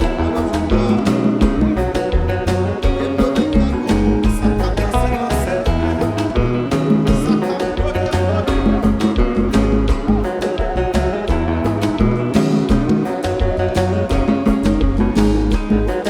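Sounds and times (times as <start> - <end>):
bass: 0.0 - 16.0
guitar: 0.0 - 16.0
steady drum beat: 0.0 - 16.0.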